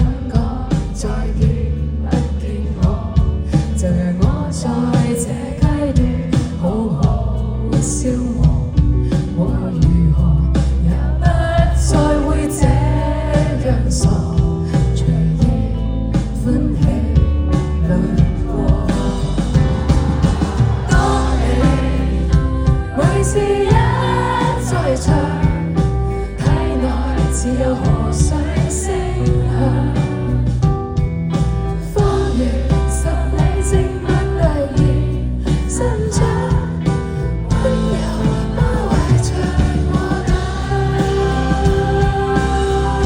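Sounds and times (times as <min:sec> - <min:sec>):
band playing a song: 0:15.4 - 0:43.0
person singing: 0:16.4 - 0:25.6, 0:32.0 - 0:43.0.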